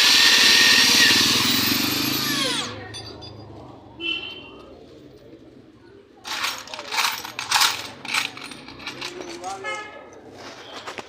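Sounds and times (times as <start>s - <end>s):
power tool motor whine: 0.0s - 2.8s.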